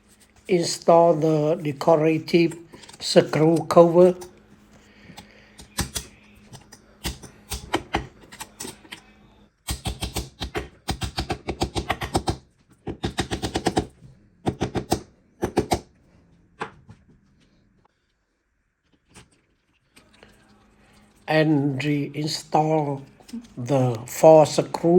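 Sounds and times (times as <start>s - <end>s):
rapid sharp tool clicking: 5.6s - 8.8s, 9.7s - 13.9s.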